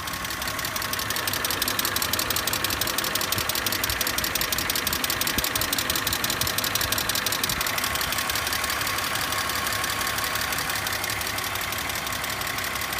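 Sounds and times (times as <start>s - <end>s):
car engine running: 0.0s - 12.9s
fast regular clicking: 0.8s - 9.2s.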